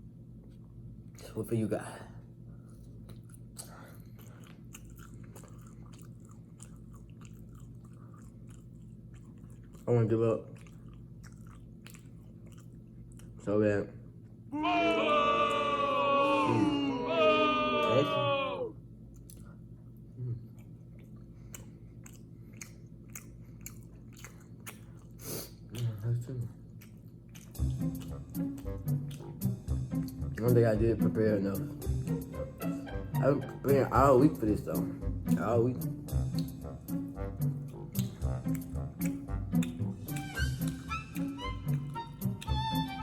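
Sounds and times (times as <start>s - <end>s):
steady low hum: 0.0s - 43.0s
person chewing crunchy food: 2.6s - 13.4s, 19.0s - 29.9s, 36.1s - 43.0s
wet mouth clicks: 10.5s - 13.4s, 19.1s - 19.6s, 20.4s - 26.0s, 26.7s - 29.6s, 36.3s - 43.0s.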